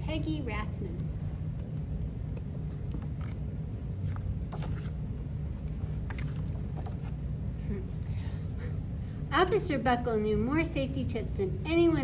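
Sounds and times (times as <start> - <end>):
steady low hum: 0.0 - 12.0
book pages rustling and clicking: 1.6 - 7.2.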